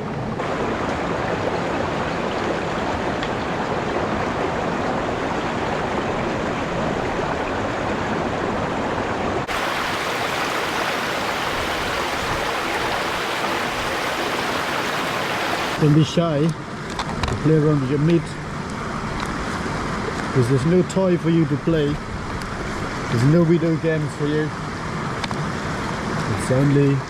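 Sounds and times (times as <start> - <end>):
river stream over small waterfalls: 0.1 - 16.0.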